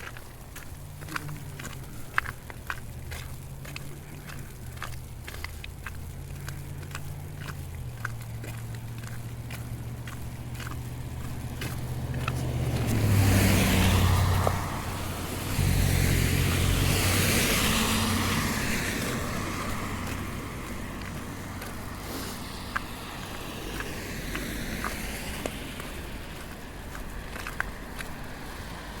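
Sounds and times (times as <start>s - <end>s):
vehicles passing: 0.0s - 29.0s
tyre hiss: 12.8s - 25.4s.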